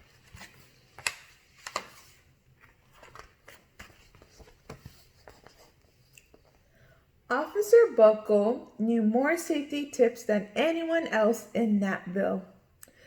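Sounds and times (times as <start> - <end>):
paper rustling: 0.0 - 6.6.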